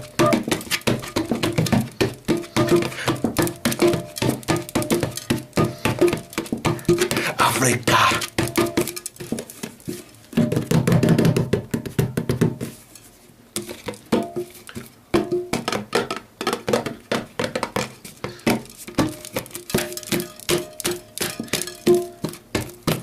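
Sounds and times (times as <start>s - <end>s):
hand drumming on a jar: 0.0s - 9.4s, 15.2s - 23.0s.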